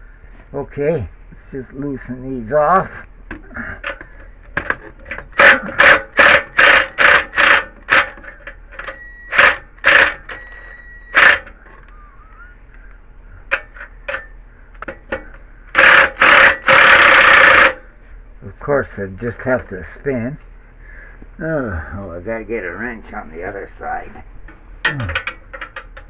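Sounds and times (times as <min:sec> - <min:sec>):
ratchet wrench clicking: 0:05.2 - 0:10.2, 0:15.7 - 0:17.8.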